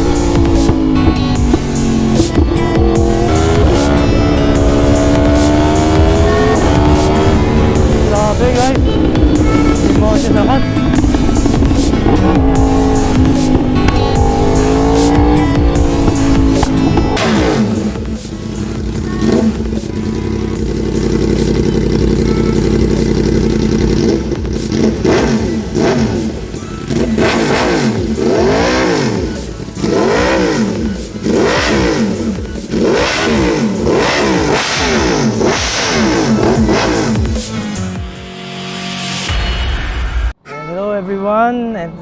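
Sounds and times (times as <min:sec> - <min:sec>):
motorcycle engine revving: 0:00.0 - 0:39.4.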